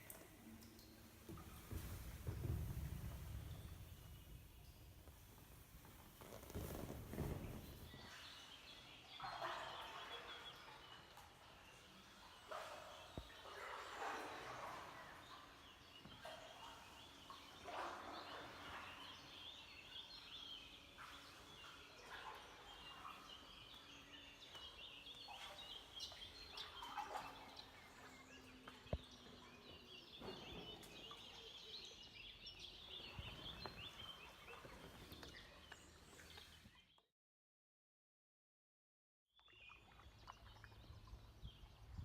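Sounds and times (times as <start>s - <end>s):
small birds chirping and singing: 15.2s - 37.0s.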